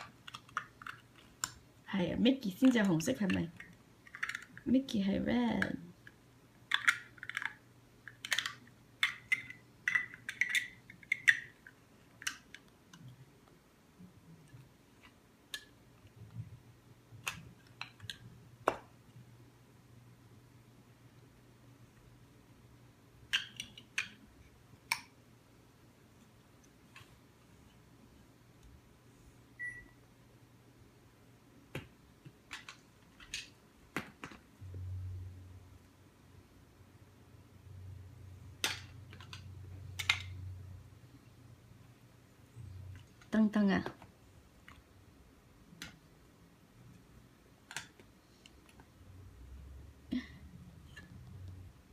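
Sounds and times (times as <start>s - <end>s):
plastic bricks clicking and clattering: 0.0s - 1.6s, 2.6s - 4.7s, 6.0s - 13.0s
low hum: 34.6s - 43.3s.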